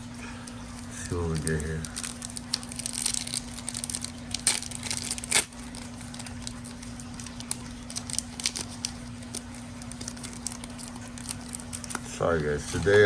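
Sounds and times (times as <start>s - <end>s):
low electrical hum: 0.0s - 13.0s
cards rustling and clicking: 0.4s - 13.0s
wrapper tearing and crinkling: 0.7s - 13.0s.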